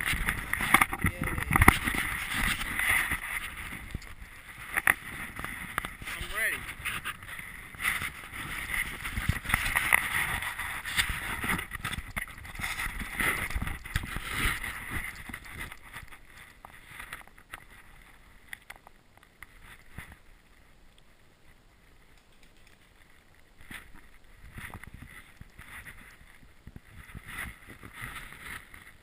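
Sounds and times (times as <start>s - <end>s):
faint clicks: 22.1s - 24.0s.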